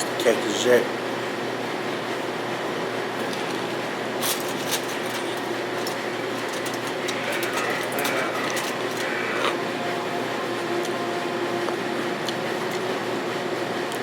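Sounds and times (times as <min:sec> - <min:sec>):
machine hum with hiss: 0:00.0 - 0:14.0.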